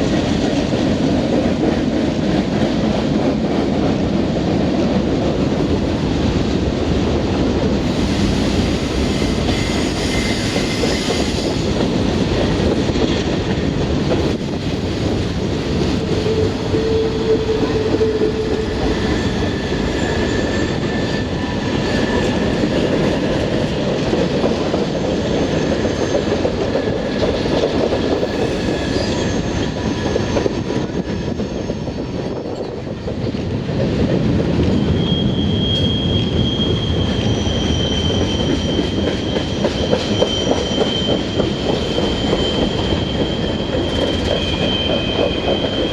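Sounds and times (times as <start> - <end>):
train wheels rumbling on rails: 0.0 - 45.9
high wheel squeals: 7.8 - 12.6, 14.4 - 23.0, 27.7 - 32.1, 34.8 - 45.9.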